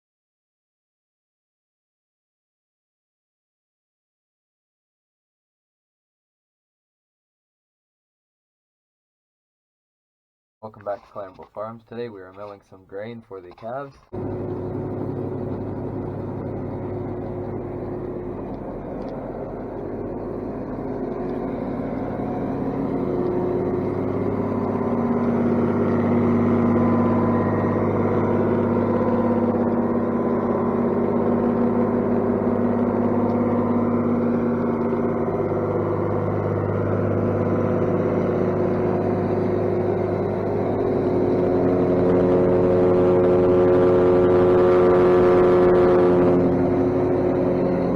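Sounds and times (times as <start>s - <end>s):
farm machinery milling grain: 13.4s - 47.9s.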